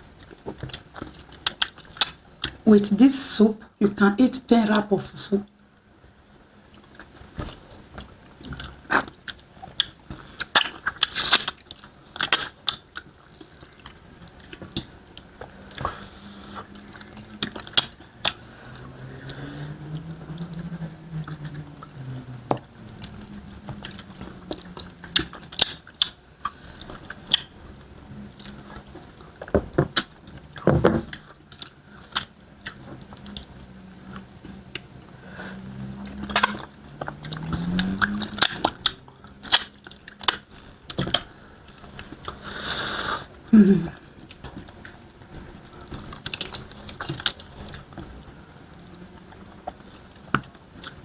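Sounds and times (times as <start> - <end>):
wet chewing and biting: 0.2 - 2.6, 6.8 - 27.6, 35.9 - 42.4
food crunches: 6.8 - 16.0
sharp mouth clicks: 36.2 - 41.0.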